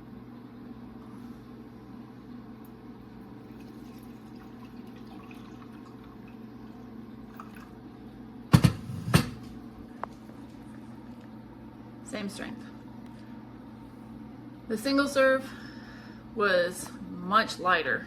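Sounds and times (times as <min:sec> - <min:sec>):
low steady hum: 0:00.0 - 0:18.0
loud knocks: 0:08.5 - 0:09.5.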